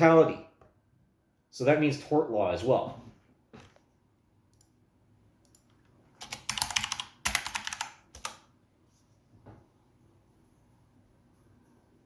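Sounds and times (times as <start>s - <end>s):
typing on computer keyboard: 5.4s - 8.5s.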